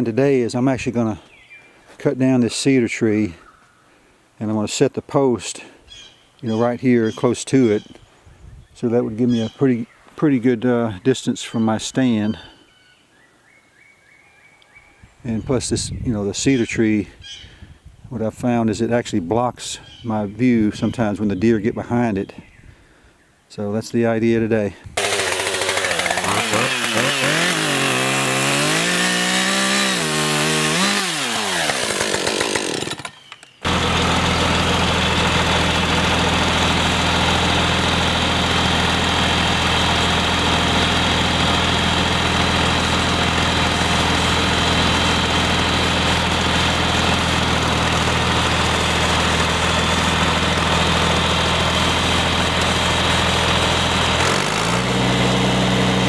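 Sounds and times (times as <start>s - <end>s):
chainsaw revving: 25.0s - 56.0s
engine running steadily: 33.7s - 56.0s.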